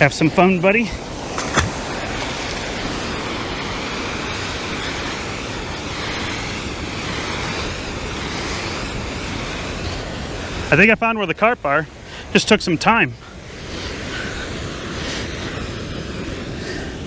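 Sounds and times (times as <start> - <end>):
water rushing over spillway: 0.0 - 10.7.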